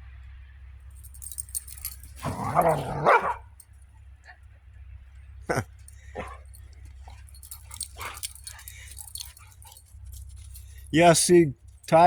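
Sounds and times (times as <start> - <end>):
puppy barking: 1.8 - 3.5, 6.2 - 9.8.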